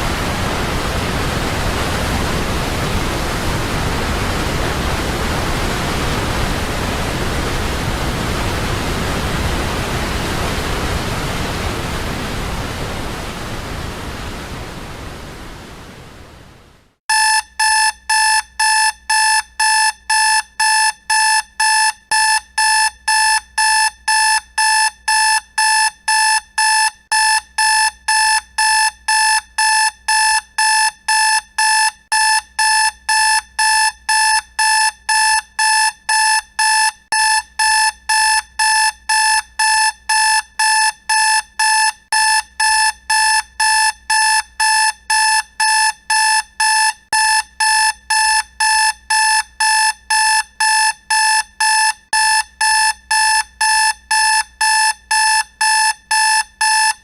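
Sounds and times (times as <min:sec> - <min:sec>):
alarm clock beeping: 0:17.1 - 0:57.0.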